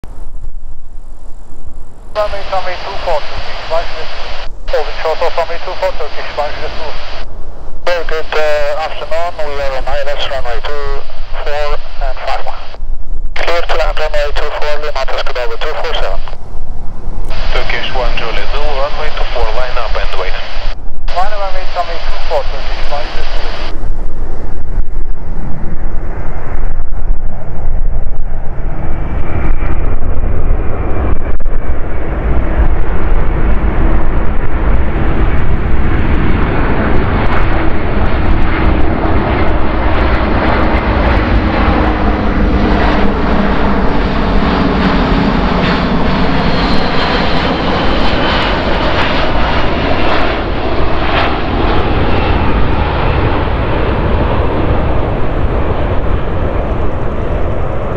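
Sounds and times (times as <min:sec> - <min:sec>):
jet engines of passing aircraft: 0:00.1 - 0:57.9.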